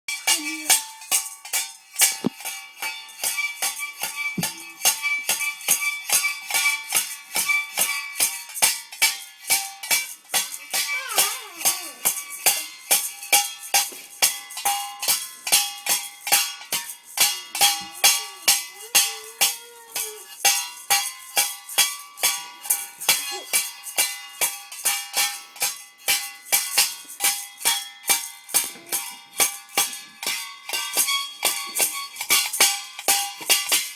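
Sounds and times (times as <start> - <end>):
metallic jingling strikes: 4.2 - 5.2.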